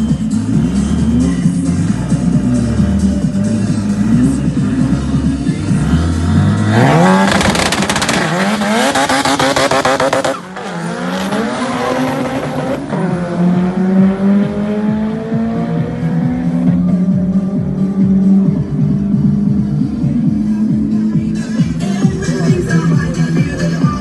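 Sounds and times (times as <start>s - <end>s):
car engine revving at full throttle: 0.0s - 23.9s.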